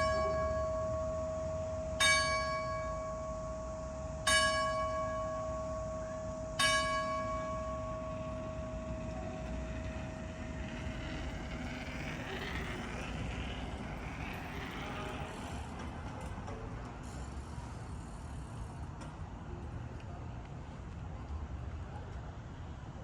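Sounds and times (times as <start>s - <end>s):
church bell hum: 0.0s - 10.4s
low rumble of traffic: 0.0s - 23.0s
car passing with tyre hiss: 8.0s - 20.9s.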